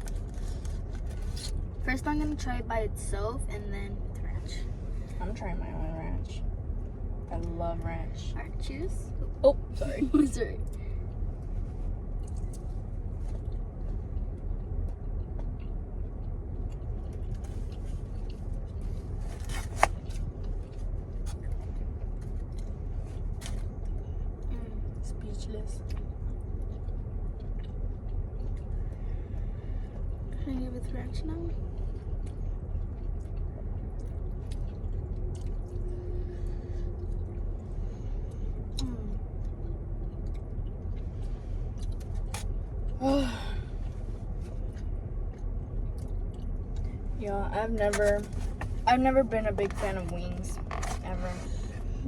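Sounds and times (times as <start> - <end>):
car interior rumble: 0.0 - 52.0
person chewing wet food: 10.7 - 24.5, 25.8 - 30.4, 31.5 - 43.0, 43.6 - 47.1.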